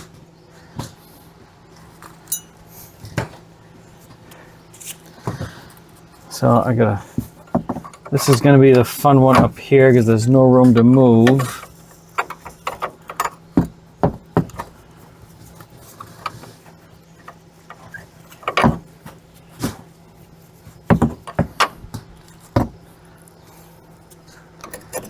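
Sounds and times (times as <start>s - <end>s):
faint steady hum: 0.0s - 25.0s
metal knocks and clinks of hand tools: 2.3s - 2.6s.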